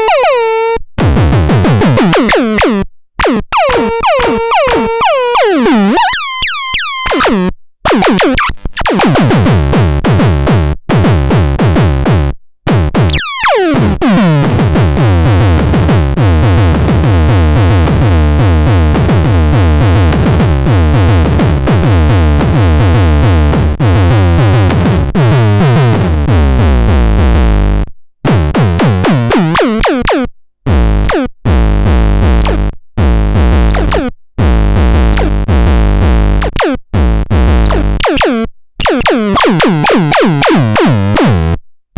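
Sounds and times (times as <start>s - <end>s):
drum-machine beat with heavy bass: 1.0s - 2.4s, 3.2s - 5.2s, 7.9s - 41.6s
synthesizer tones: 33.6s - 34.1s.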